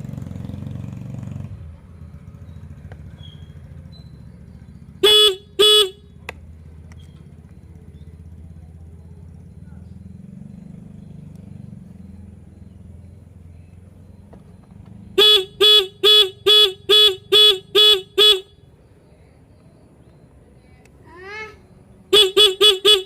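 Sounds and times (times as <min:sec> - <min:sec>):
motorcycle horn beeping: 0:04.9 - 0:06.2, 0:15.1 - 0:18.7, 0:22.1 - 0:23.0.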